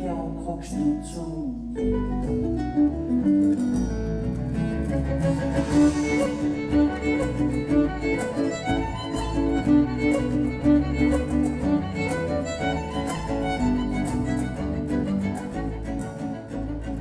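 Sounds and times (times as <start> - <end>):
bass notes: 1.4 - 17.0
violin melody: 4.2 - 17.0.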